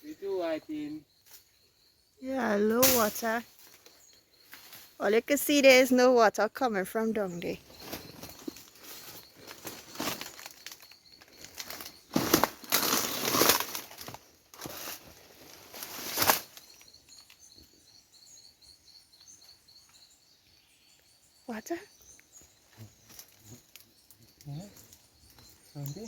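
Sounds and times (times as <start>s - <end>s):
faint high-pitched chirping: 0.0s - 12.2s, 15.5s - 26.0s
rustling through dry brush: 7.6s - 17.0s.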